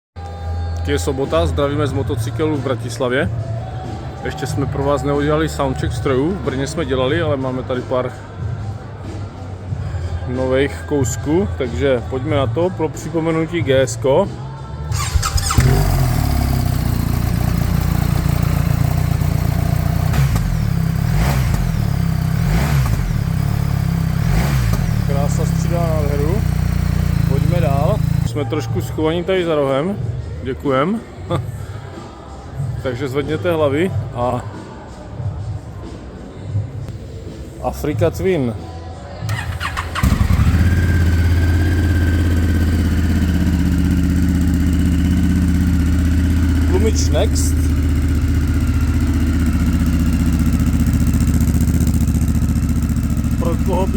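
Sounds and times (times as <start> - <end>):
motorcycle engine idling and revving: 14.9 - 28.6, 39.3 - 53.9.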